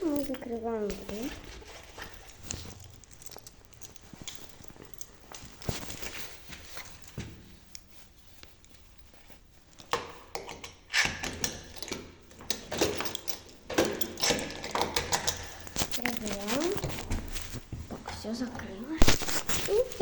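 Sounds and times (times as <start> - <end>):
keys jangling: 0.0 - 8.0, 12.7 - 17.6
key turning in door lock: 10.4 - 17.4.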